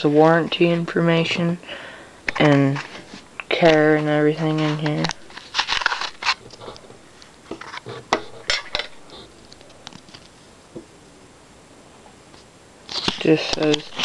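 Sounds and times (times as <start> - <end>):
packaging and paper rustling: 4.6 - 7.0, 12.9 - 14.0.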